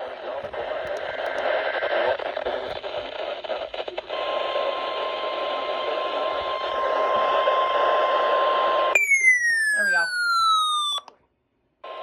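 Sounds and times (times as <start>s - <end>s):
static crackles: 0.0s - 8.3s
radio static hiss: 0.0s - 8.4s
steady high-pitched tone: 9.0s - 11.1s.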